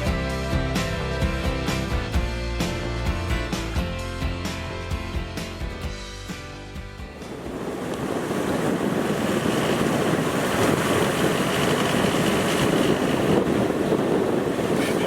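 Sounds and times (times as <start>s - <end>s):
sea wash: 7.1s - 15.0s
wind buffeting microphone: 7.1s - 15.0s.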